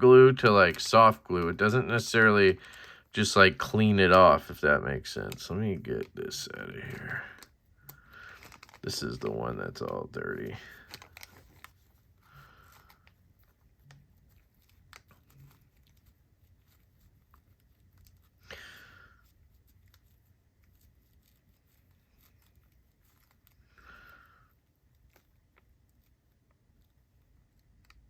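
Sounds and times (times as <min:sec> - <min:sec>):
light clicks of small parts: 0:05.1 - 0:06.1.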